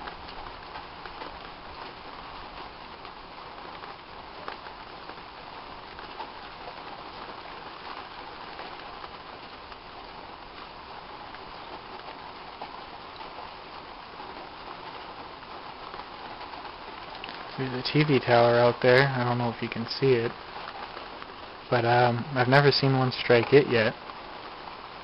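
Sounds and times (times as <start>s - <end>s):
raindrops ticking: 0.0s - 25.0s
steady rain hiss: 0.0s - 25.0s.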